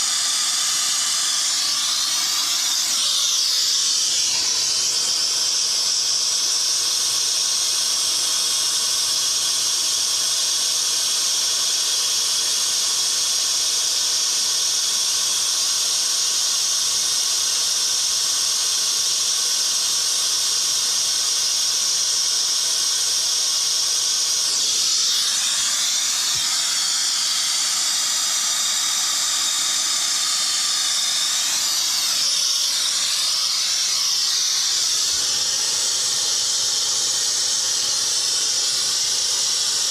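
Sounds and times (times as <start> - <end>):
torch flame hissing: 0.0 - 9.2, 21.1 - 39.9.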